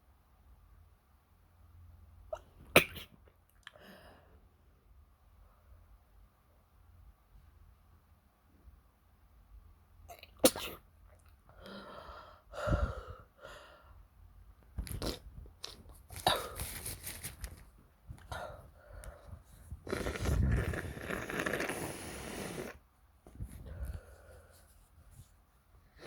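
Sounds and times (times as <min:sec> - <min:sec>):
person sneezing and sniffling: 0:10.3 - 0:10.9, 0:16.1 - 0:17.0, 0:19.7 - 0:22.8.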